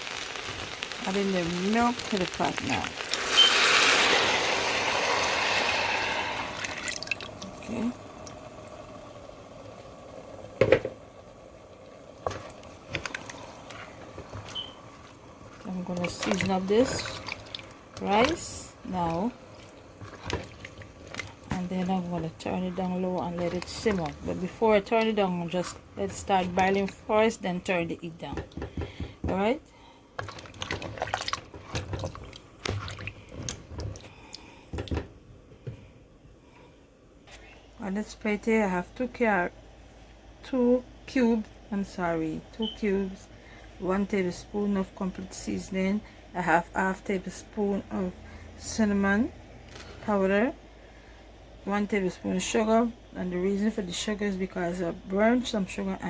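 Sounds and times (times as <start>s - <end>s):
liquid popping in a cooking pot: 0.0s - 4.4s
utensil knocking on cooking pot: 28.2s - 29.4s.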